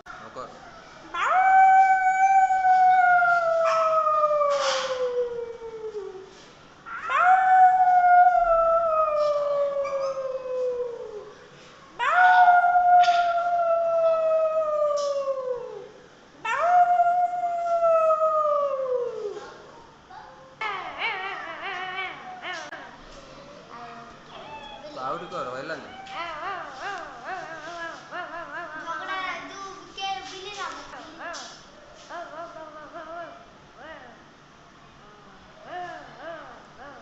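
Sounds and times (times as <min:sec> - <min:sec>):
animal howls: 0:01.1 - 0:06.3, 0:06.9 - 0:11.4, 0:12.0 - 0:19.7, 0:20.6 - 0:23.0, 0:24.3 - 0:29.1.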